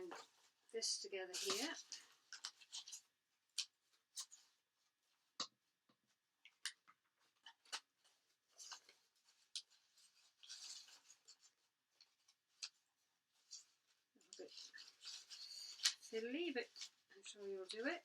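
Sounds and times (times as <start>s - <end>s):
paper rustling: 1.3s - 3.1s, 7.2s - 18.0s
paper crackles and taps: 1.3s - 4.4s.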